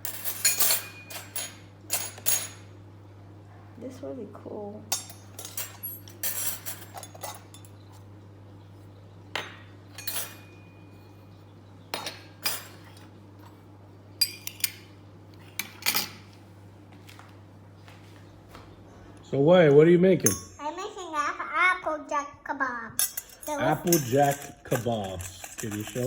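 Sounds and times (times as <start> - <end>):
toy dishes clattering and clinking: 4.9 - 7.9, 23.0 - 26.0.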